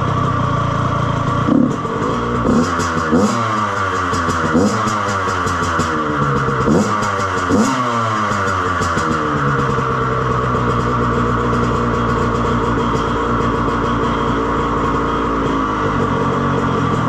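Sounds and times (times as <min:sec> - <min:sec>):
two-stroke engine running: 0:00.0 - 0:17.0.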